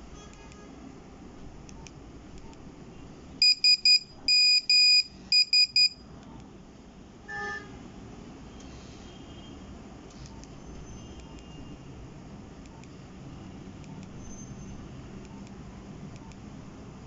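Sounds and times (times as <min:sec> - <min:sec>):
soft low beep: 0:03.4 - 0:06.0.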